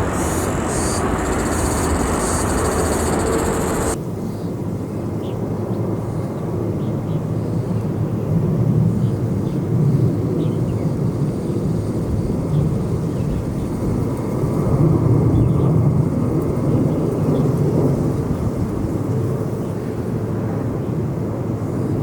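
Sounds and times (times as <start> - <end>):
faint steady whine: 0.0 - 4.0
jet engines rumbling: 0.0 - 4.0.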